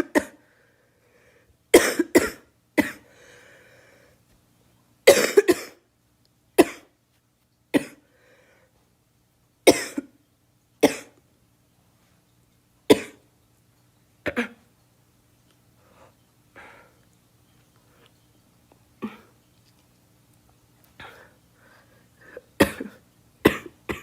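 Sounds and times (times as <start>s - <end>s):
girl coughing: 0.0s - 0.4s, 1.8s - 3.0s, 5.1s - 5.8s, 9.7s - 10.1s, 12.9s - 13.2s, 14.3s - 14.6s, 22.6s - 24.0s.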